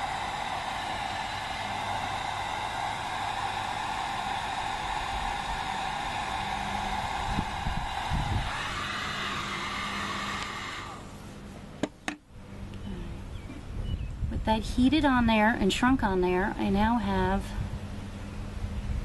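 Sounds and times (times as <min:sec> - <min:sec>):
heat gun blowing: 0:00.0 - 0:11.4.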